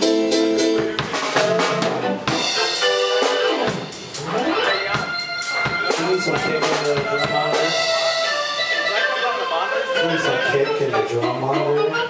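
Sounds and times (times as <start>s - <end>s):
drum kit hits: 0.0s - 9.2s
held instrument notes: 1.4s - 12.0s.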